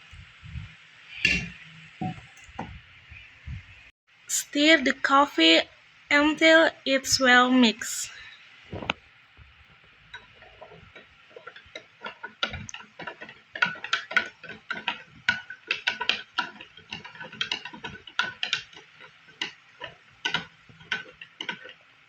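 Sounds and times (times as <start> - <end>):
metal spoon clinking in cup: 1.3 - 1.6.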